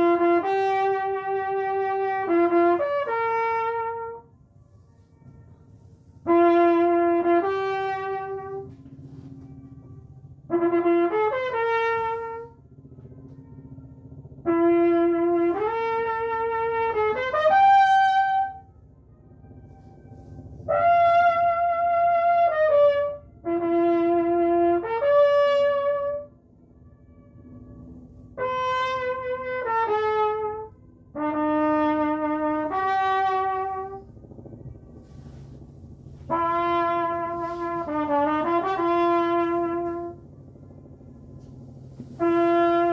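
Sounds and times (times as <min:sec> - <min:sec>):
solo brass horn playing: 0:00.0 - 0:04.3, 0:06.2 - 0:09.5, 0:10.5 - 0:12.6, 0:14.4 - 0:18.7, 0:20.6 - 0:26.3, 0:28.4 - 0:34.1, 0:35.0 - 0:40.3, 0:41.3 - 0:42.9.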